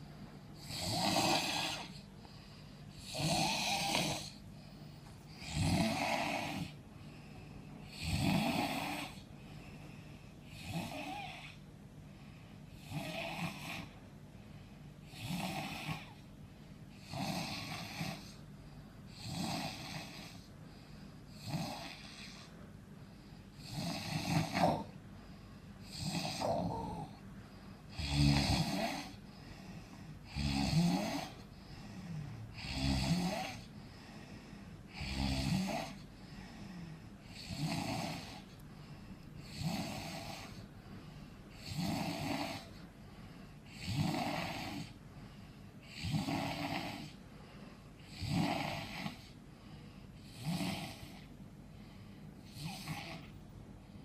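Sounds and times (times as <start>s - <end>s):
person snoring: 0.6s - 4.5s, 5.3s - 6.8s, 7.8s - 9.3s, 10.4s - 11.6s, 12.7s - 14.0s, 15.0s - 16.2s, 17.0s - 18.4s, 19.1s - 20.5s, 21.3s - 22.5s, 23.6s - 25.0s, 25.8s - 27.2s, 27.9s - 34.2s, 34.9s - 38.5s, 39.4s - 40.6s, 41.5s - 42.8s, 43.7s - 45.0s, 45.8s - 47.2s, 48.0s - 49.4s, 50.2s - 51.3s, 52.4s - 53.3s.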